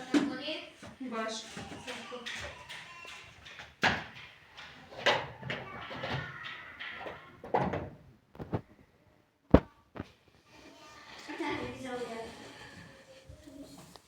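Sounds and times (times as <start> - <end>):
household knocks and bumps: 0.0 - 8.7.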